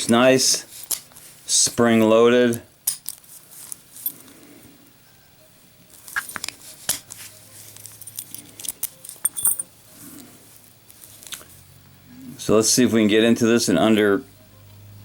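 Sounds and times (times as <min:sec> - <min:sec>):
padlock and keys clicking: 0:07.8 - 0:09.7.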